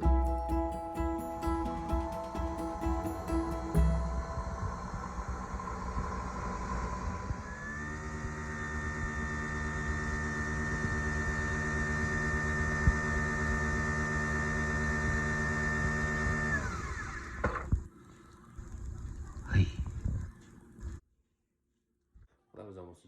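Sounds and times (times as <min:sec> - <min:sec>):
machine humming with a whine: 0:00.0 - 0:17.9.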